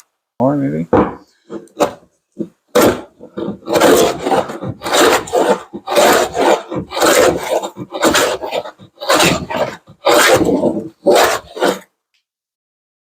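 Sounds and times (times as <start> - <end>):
plane knocking on wood: 1.0 - 11.8
hand plane rasping on wood: 1.5 - 11.8.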